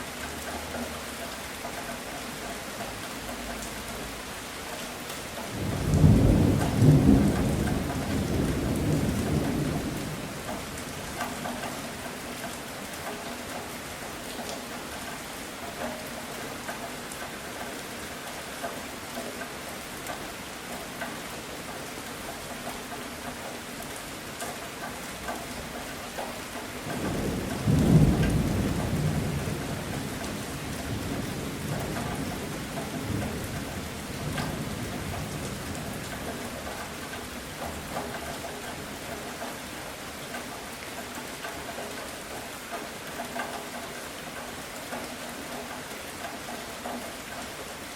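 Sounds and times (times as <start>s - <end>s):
steady rain falling: 0.0s - 47.9s
thunder rumbling: 5.6s - 10.3s.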